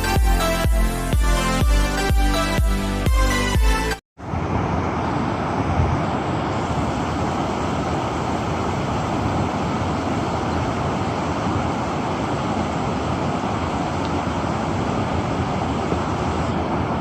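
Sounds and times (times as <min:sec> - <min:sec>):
river rapids rushing: 0:04.2 - 0:17.0.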